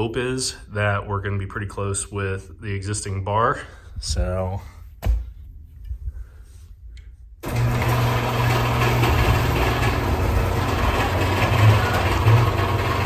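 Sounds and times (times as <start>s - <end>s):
garage door opener motor humming: 7.4s - 13.0s.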